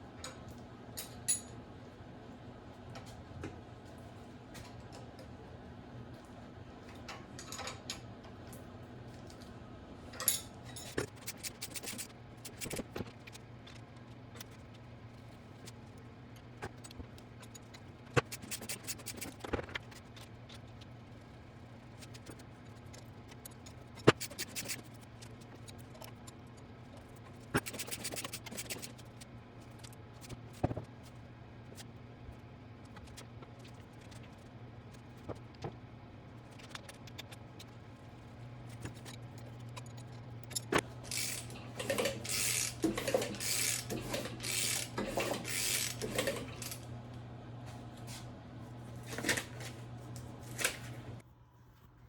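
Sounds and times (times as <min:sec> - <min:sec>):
low electrical hum: 0:00.0 - 0:52.0
metallic clinks and scrapes: 0:10.2 - 0:12.8, 0:38.8 - 0:46.8.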